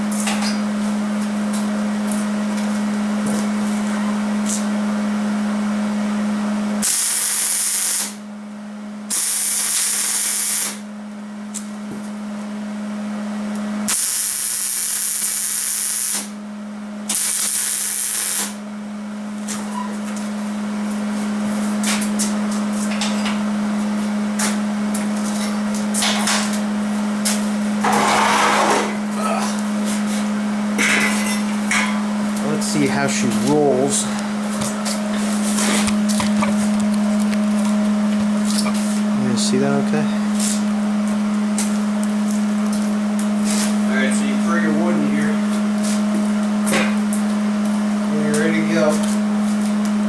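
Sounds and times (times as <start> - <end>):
welding arc hissing and crackling: 6.8 - 8.2, 9.1 - 10.8, 13.9 - 16.3, 17.1 - 18.6
steady low hum: 13.8 - 50.0.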